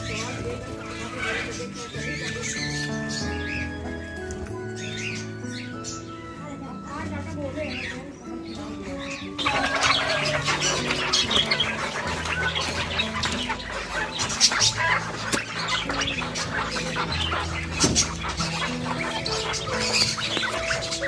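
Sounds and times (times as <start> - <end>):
background music with low notes: 0.0 - 21.0
birds chirping and squawking: 0.0 - 21.0.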